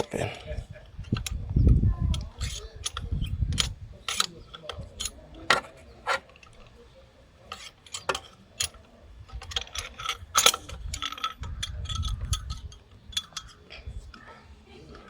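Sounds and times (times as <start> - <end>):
hand tool clinking on bolts: 2.2 - 6.8, 7.4 - 13.7.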